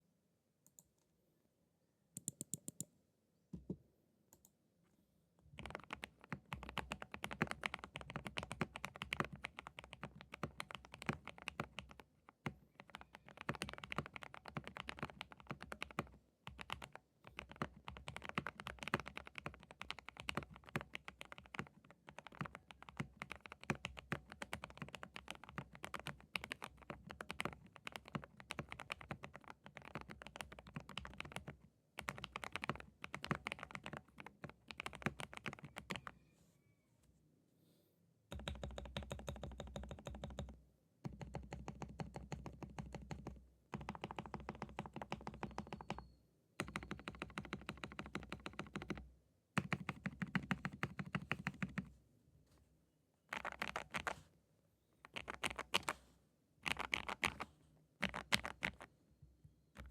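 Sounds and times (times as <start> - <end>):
typing on mechanical keyboard: 5.6 - 36.2, 38.3 - 49.0, 49.6 - 51.9, 53.3 - 54.2, 55.1 - 56.0, 56.6 - 58.9.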